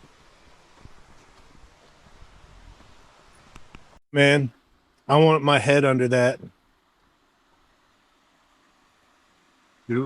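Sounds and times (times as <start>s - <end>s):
wind noise on microphone: 0.0s - 4.0s
outdoor rustling: 0.0s - 10.0s.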